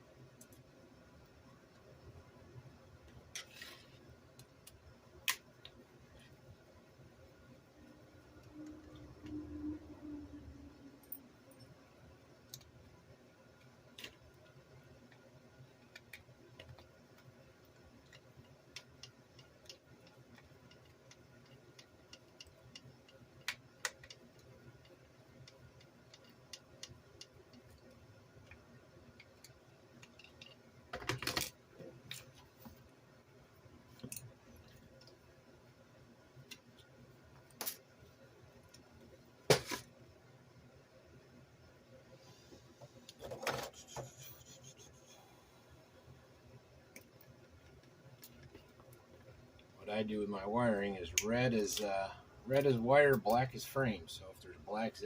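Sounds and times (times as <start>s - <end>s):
tools and parts clicking: 29.2s - 32.3s, 34.0s - 34.3s.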